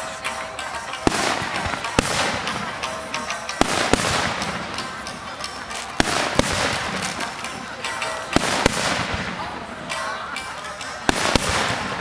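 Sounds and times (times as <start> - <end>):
fireworks crackling: 0.0 - 12.0
fireworks booming: 1.0 - 9.5, 11.1 - 12.0.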